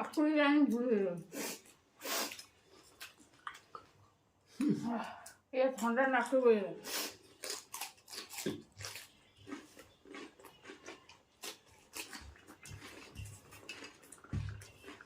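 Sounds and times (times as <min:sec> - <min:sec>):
person chewing crunchy fruit: 0:01.5 - 0:03.9, 0:06.9 - 0:15.0.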